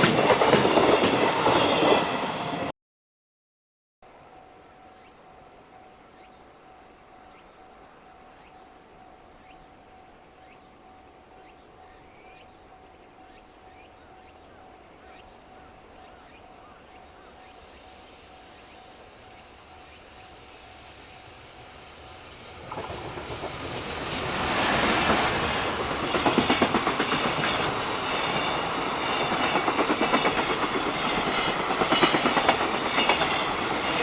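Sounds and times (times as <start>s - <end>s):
faint steady high tone: 4.0s - 22.6s
faint chirps: 4.1s - 22.5s.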